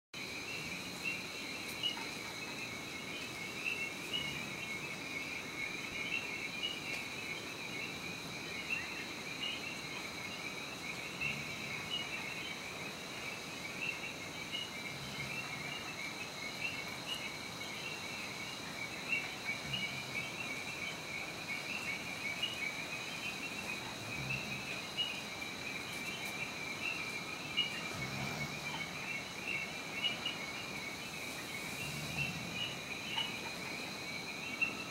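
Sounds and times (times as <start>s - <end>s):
frogs chirping: 0.2s - 34.9s.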